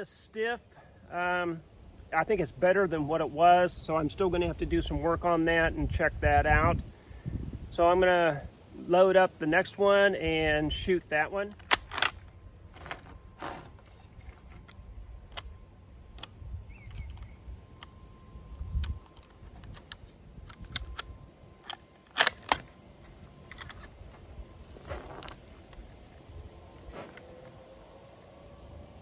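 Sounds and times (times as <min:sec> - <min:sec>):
metallic clicks of rifle handling: 0:11.5 - 0:13.1, 0:18.8 - 0:22.8.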